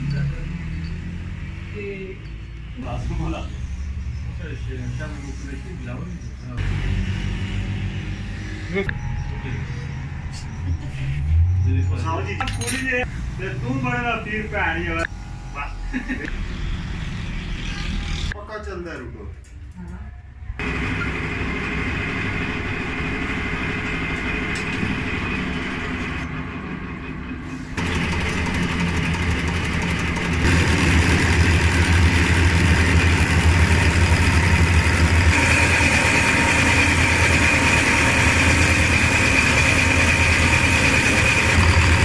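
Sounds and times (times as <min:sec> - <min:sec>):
diesel engine running: 0:20.6 - 0:42.0.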